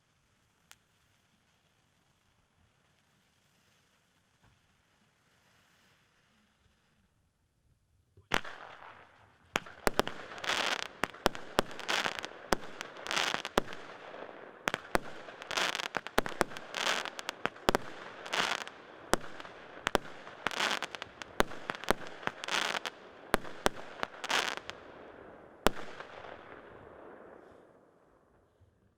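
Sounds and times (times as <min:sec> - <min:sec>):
firework shots launching and bursting: 0:08.3 - 0:25.0, 0:25.6 - 0:26.7
firework bangs: 0:08.3 - 0:27.5
firework fountain hissing: 0:09.6 - 0:24.8.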